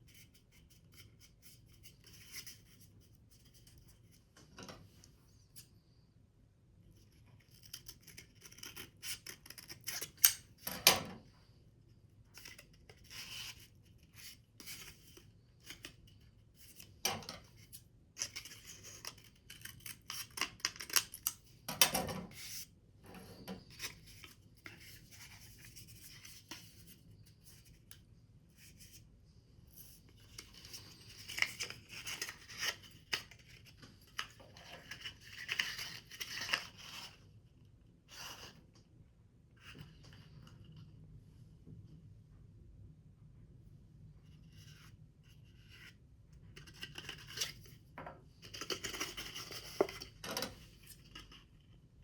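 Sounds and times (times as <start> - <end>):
scissors snipping paper: 7.5 - 10.4, 18.2 - 21.4.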